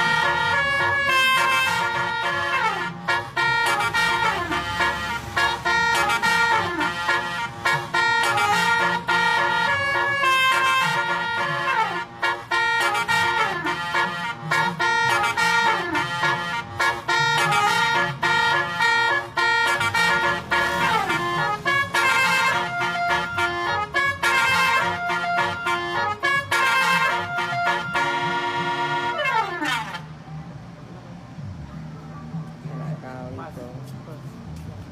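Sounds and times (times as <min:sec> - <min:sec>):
air horn playing melody: 0:00.0 - 0:30.2.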